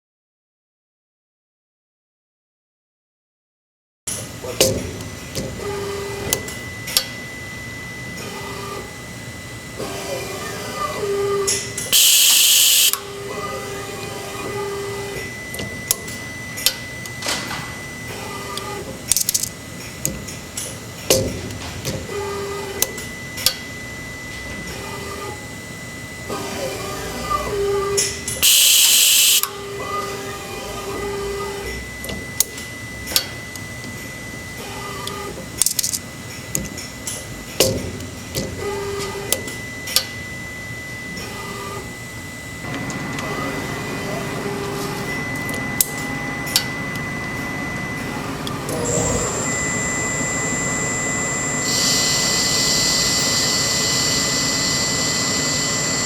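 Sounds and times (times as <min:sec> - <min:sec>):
motor whine: 0:12.0 - 0:13.0, 0:28.4 - 0:29.4
short motor whines: 0:12.0 - 0:13.0, 0:28.4 - 0:29.5, 0:48.7 - 0:56.0
thin steady high tone: 0:12.0 - 0:13.0, 0:28.4 - 0:29.5
steady machine tone: 0:12.0 - 0:13.1, 0:28.4 - 0:29.5, 0:48.6 - 0:56.0.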